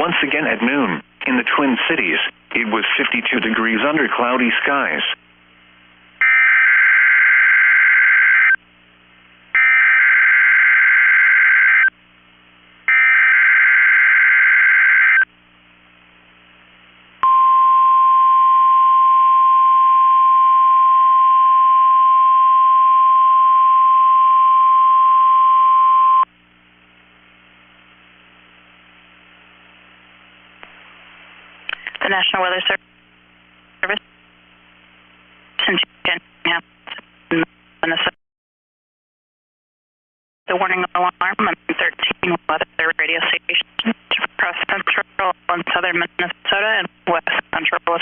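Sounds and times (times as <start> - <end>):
steady alarm tone: 6.2 - 8.6.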